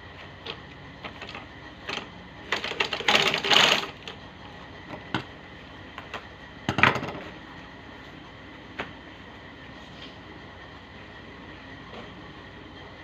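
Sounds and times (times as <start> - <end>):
sewing machine clatter: 0.4 - 4.2
sewing machine clicks: 1.2 - 4.1.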